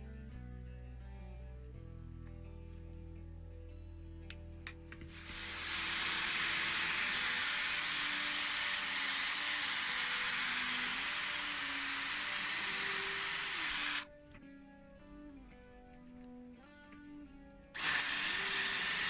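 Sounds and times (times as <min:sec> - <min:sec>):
hair styler blowing air: 0:05.1 - 0:14.0, 0:17.8 - 0:19.0.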